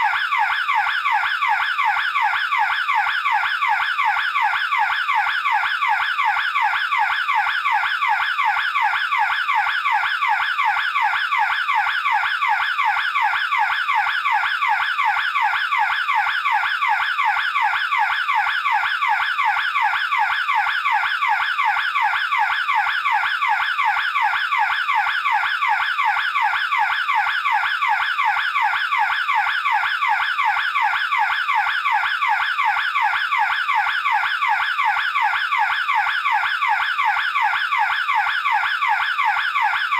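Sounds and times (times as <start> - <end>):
burglar alarm siren wailing: 0.0 - 39.9.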